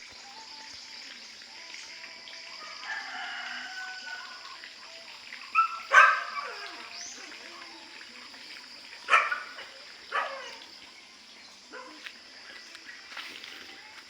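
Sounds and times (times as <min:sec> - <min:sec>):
roosters crowing: 0:02.6 - 0:04.5.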